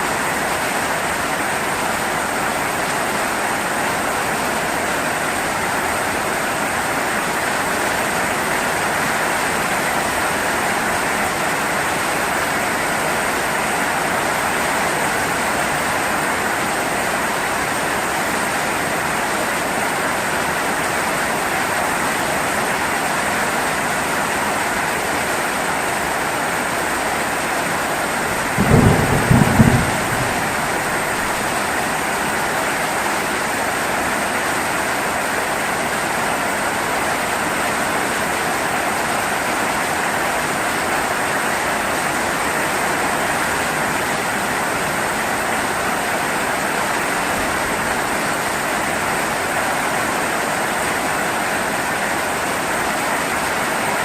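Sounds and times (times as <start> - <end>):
heavy rain: 0.0 - 54.0
thunder rumble: 28.4 - 31.8.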